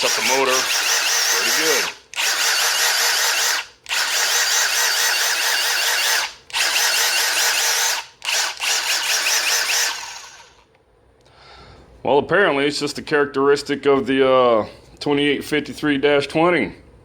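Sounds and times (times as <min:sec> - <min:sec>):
impact driver motor whining: 0:00.0 - 0:10.6.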